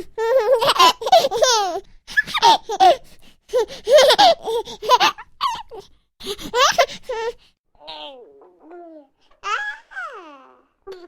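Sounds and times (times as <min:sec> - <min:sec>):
baby laughing and squealing: 0:00.2 - 0:07.3, 0:09.4 - 0:10.4.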